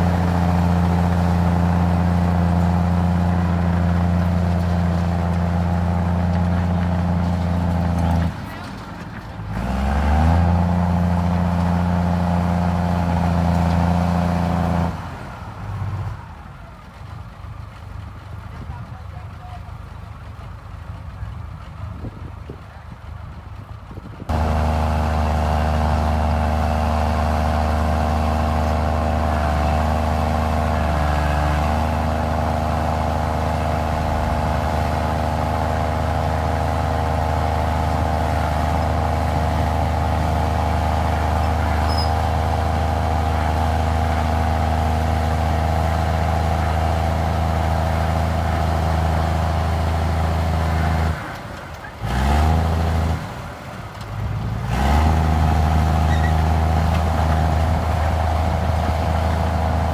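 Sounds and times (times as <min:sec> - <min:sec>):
bulldozer diesel engine droning: 0:00.0 - 0:59.9
engine revving: 0:09.5 - 0:15.1, 0:24.3 - 0:51.2, 0:52.0 - 0:53.5, 0:54.1 - 0:59.9.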